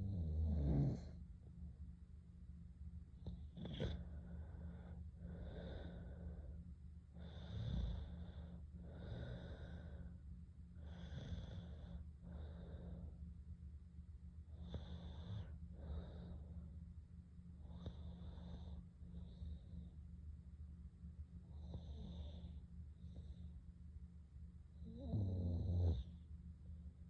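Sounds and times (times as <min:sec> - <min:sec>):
soft snoring: 0:00.0 - 0:01.2, 0:03.2 - 0:10.2, 0:10.8 - 0:13.2, 0:14.5 - 0:16.7, 0:17.6 - 0:19.9, 0:21.5 - 0:23.5, 0:24.7 - 0:26.2
steady low hum: 0:00.0 - 0:27.0.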